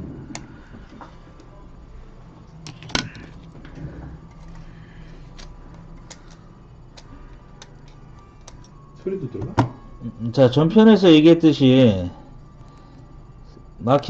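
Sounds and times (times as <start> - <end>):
low steady hum: 0.0 - 14.0
small tools clicking and tapping: 5.3 - 8.8.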